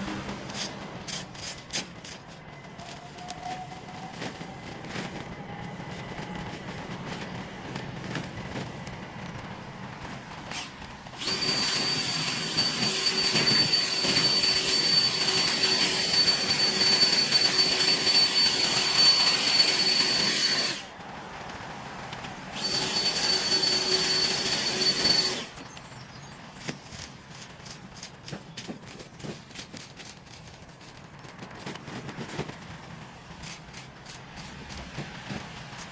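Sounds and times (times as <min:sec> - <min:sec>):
power tool whining: 0:10.5 - 0:21.0, 0:22.5 - 0:25.7.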